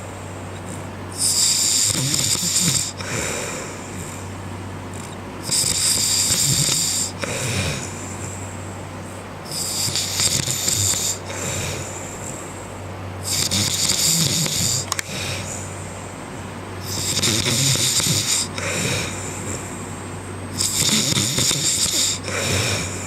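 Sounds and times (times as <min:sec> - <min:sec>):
steady low hum: 0:00.0 - 0:23.0
man snoring: 0:00.7 - 0:04.3, 0:04.9 - 0:08.3, 0:09.5 - 0:12.4, 0:13.2 - 0:15.7, 0:16.8 - 0:19.8, 0:20.5 - 0:23.0.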